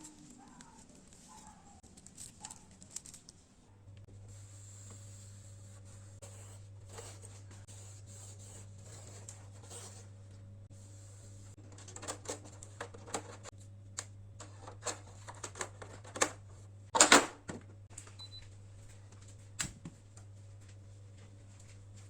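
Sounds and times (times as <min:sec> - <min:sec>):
clicks and knocks of objects handled: 0:00.0 - 0:04.0
steady low hum: 0:00.0 - 0:22.0.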